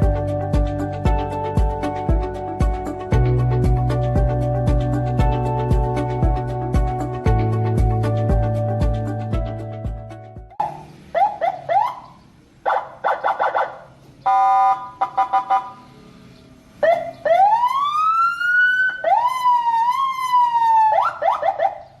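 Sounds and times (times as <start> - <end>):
electronic siren chirps and wails: 10.5 - 15.8, 16.8 - 22.0.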